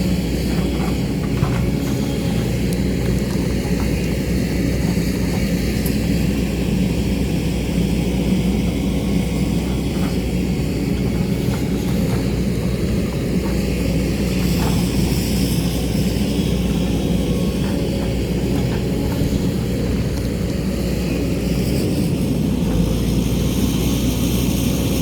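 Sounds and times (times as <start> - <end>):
diesel engine droning: 0.0 - 25.0.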